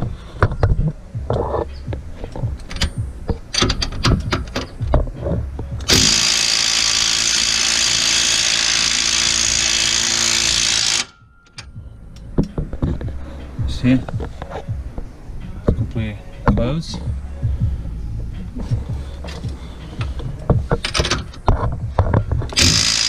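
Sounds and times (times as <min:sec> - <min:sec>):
parts clicking and knocking: 0:00.0 - 0:13.2, 0:18.6 - 0:23.0
impact wrench hammering: 0:05.8 - 0:11.8, 0:22.0 - 0:23.0.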